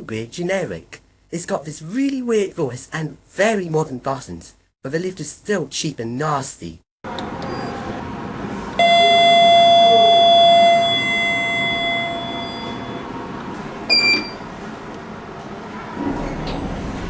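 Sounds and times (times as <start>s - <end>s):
short high beep: 8.8s - 13.1s
lift electronic signal tone: 8.8s - 13.2s.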